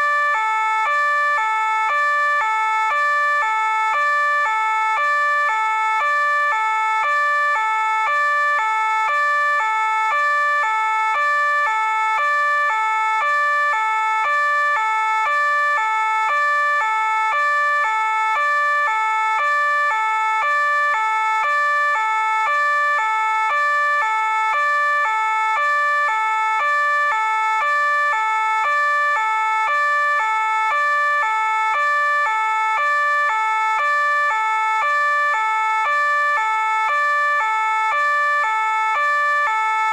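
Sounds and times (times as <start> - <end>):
police two-tone siren: 0.0 - 39.9.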